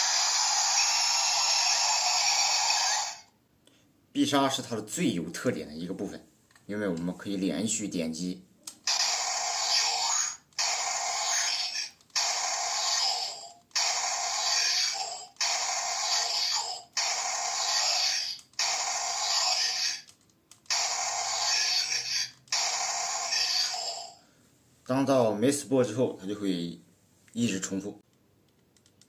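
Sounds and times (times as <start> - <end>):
toy speaker sound effect and voice: 0.0 - 3.3, 8.9 - 20.1, 20.7 - 24.2.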